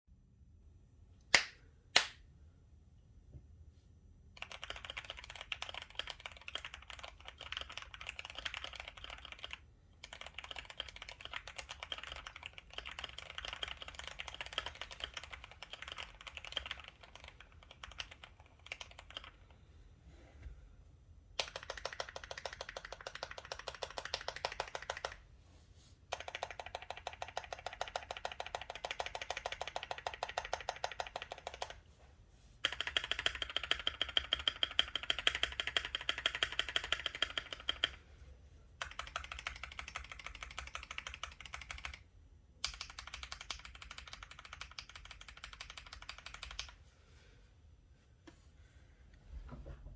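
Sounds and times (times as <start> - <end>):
mechanical keyboard typing: 4.4 - 19.4, 21.4 - 25.2, 26.1 - 31.8, 32.6 - 38.0, 38.8 - 42.0, 42.6 - 46.8.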